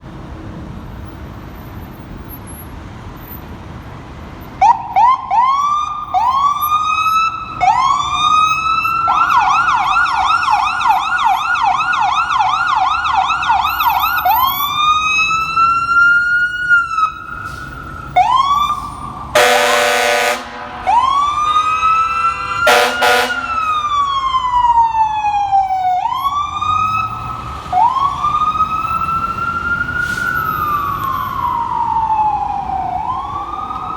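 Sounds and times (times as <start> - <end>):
truck engine and road noise: 0.0 - 33.9
fire engine siren: 4.4 - 33.9
air horn blasts: 19.4 - 23.9.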